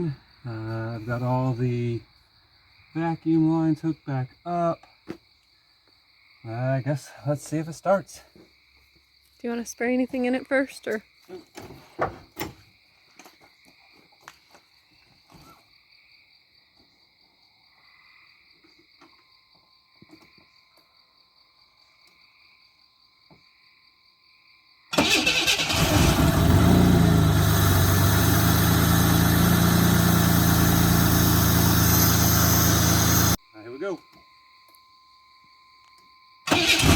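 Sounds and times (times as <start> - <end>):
crickets chirping: 0.0 - 26.6, 27.6 - 36.9
car engine starting and running: 24.9 - 33.4, 36.5 - 36.9.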